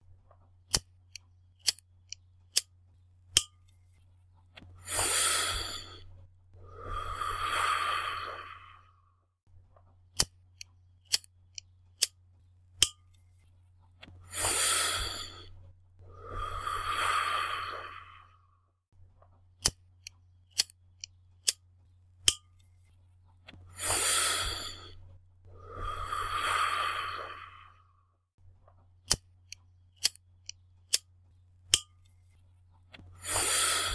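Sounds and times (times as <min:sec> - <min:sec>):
person exhaling: 0:04.8 - 0:09.0, 0:14.3 - 0:18.4, 0:23.8 - 0:28.0, 0:33.2 - 0:33.9
person inhaling smoke: 0:04.8 - 0:09.0, 0:14.2 - 0:18.4, 0:23.7 - 0:27.9, 0:33.2 - 0:33.9
lighter clicking: 0:14.3 - 0:15.4.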